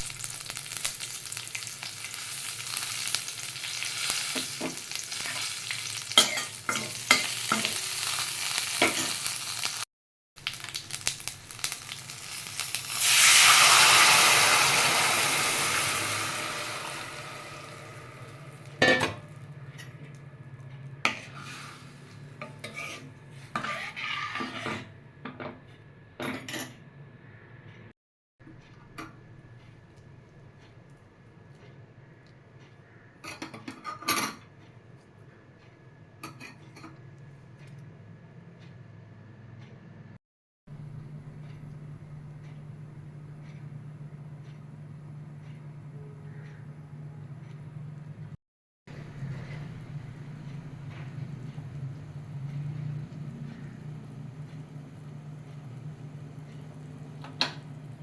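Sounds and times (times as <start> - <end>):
spices sizzling in hot oil: 0.0 - 18.8, 48.9 - 58.0
spoon scraping pan: 4.2 - 7.8, 21.1 - 25.0.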